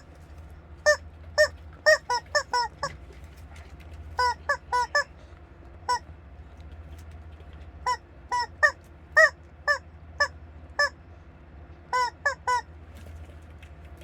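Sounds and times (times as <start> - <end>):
squeaky toy honking squeaks: 0.9 - 2.9, 4.2 - 5.1, 7.9 - 11.0, 11.9 - 12.7.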